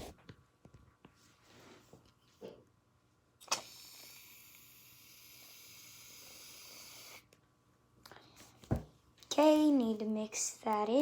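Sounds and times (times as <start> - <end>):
aerosol can spraying hiss: 3.9 - 7.2.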